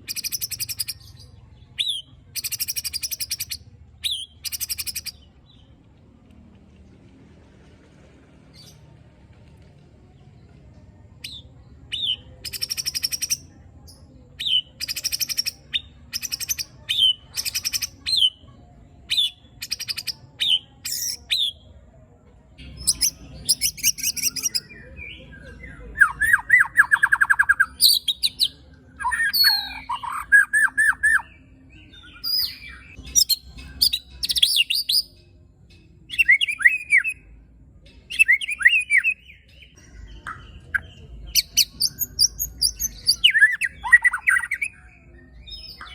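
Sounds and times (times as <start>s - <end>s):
bird harsh calls and trills: 22.6s - 45.9s.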